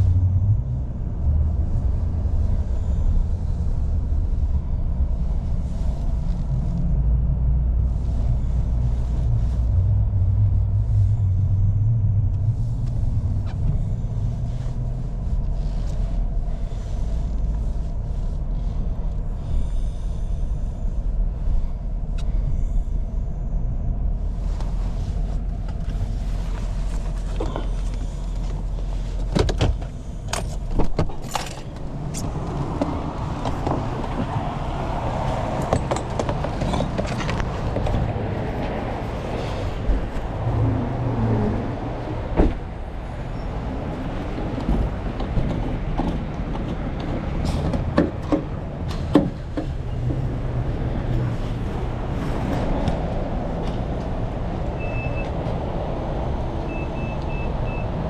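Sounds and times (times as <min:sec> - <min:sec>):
truck engine and road rumble: 0:00.0 - 0:58.0.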